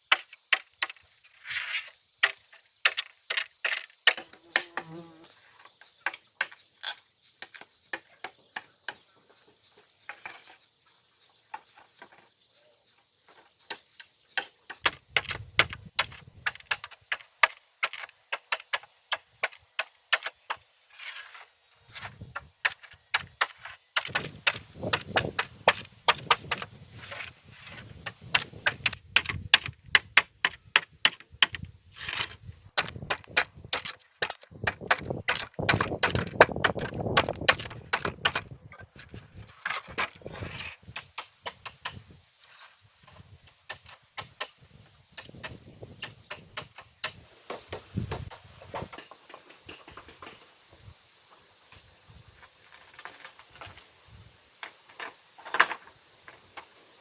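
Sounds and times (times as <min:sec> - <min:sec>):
wood knocking on wood: 0:32.2 - 0:38.5.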